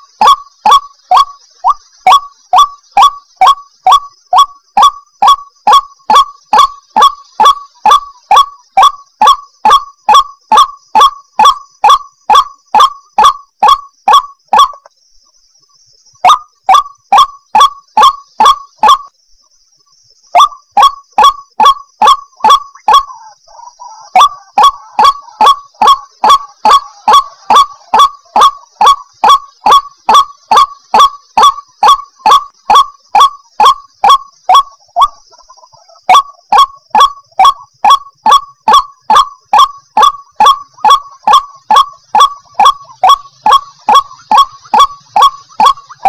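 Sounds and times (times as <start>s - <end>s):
waterhen calling harshly: 20.4s - 46.0s.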